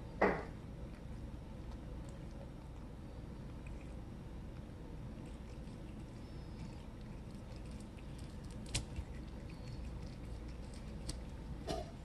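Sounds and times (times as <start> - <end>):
cat chewing wetly: 0.0 - 12.0
teeth snapping on bone: 6.7 - 11.3.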